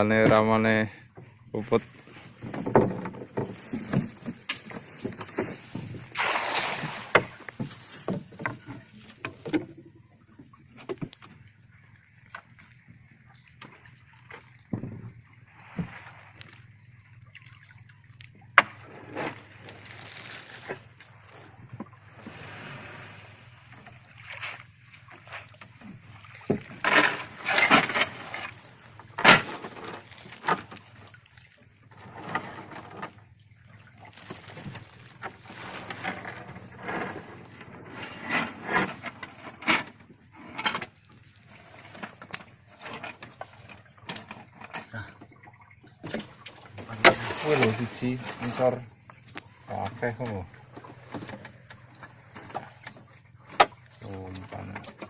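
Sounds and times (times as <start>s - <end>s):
shallow water splashing: 1.8s - 9.4s, 10.0s - 37.6s.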